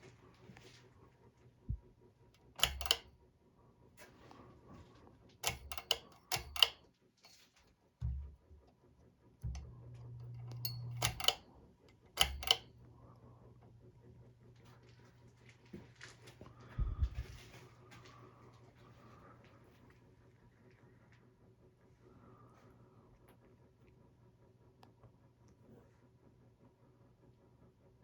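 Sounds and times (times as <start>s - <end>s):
faint low electrical hum: 0.0s - 27.7s
switch clicks: 2.5s - 3.1s, 5.4s - 6.8s, 9.4s - 11.4s, 12.2s - 12.7s.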